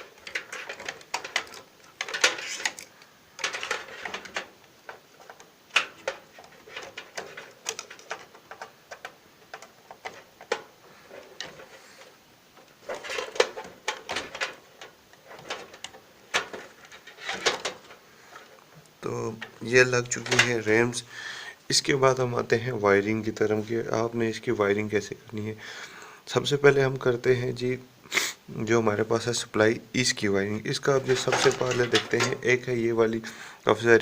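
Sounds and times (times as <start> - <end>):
handling rustle: 0.0 - 21.0, 30.7 - 33.0.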